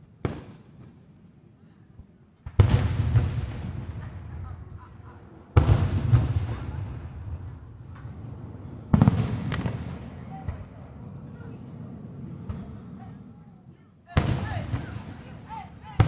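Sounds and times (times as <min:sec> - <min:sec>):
fireworks booming: 0:00.0 - 0:01.2, 0:02.4 - 0:13.5, 0:14.1 - 0:16.0
small fireworks pops: 0:00.2 - 0:01.0, 0:05.6 - 0:10.9.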